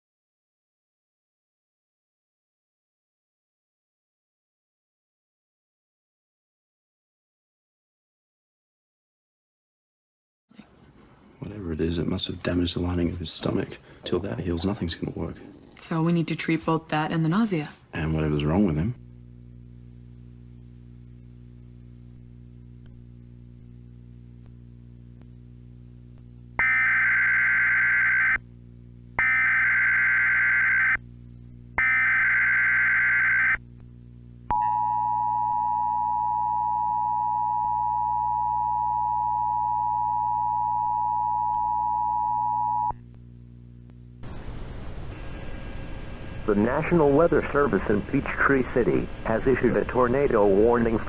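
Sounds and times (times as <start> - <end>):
low steady hum: 18.0 - 26.8, 28.4 - 29.8, 30.6 - 32.2, 33.6 - 51.0
data bursts: 45.8 - 51.0.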